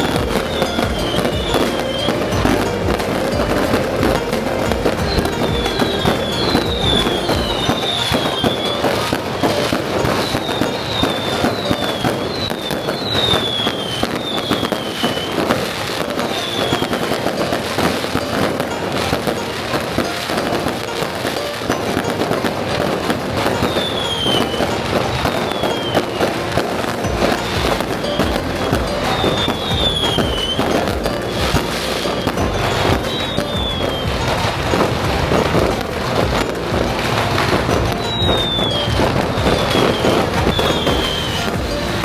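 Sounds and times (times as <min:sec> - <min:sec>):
firecrackers crackling and popping: 0:00.0 - 0:42.0
falling firework whistles: 0:05.2 - 0:18.7, 0:19.7 - 0:27.0, 0:37.4 - 0:42.0.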